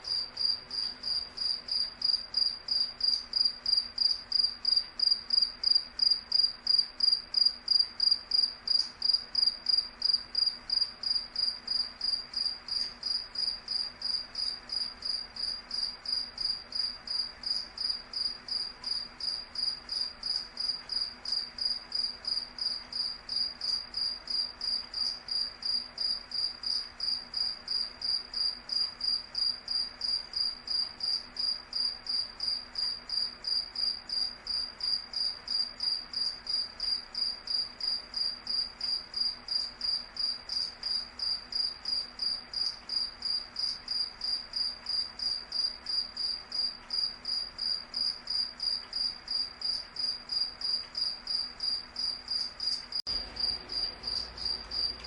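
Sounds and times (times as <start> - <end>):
cricket chirping: 0.0 - 55.0.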